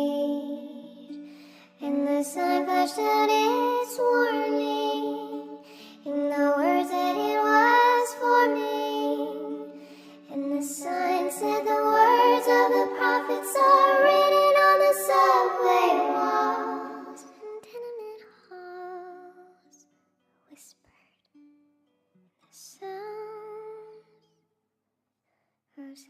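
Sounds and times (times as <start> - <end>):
high vocal singing: 0.0 - 18.0
sped-up song accompaniment: 9.9 - 17.6.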